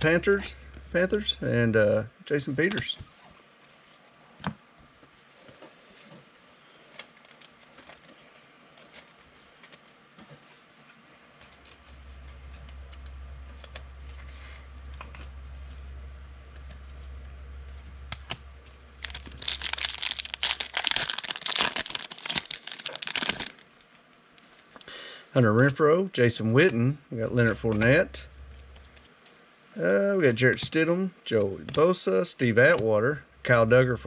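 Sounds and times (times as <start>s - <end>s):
low steady hum: 0.0s - 34.0s
foil wrapper tearing and crinkling: 19.0s - 23.7s.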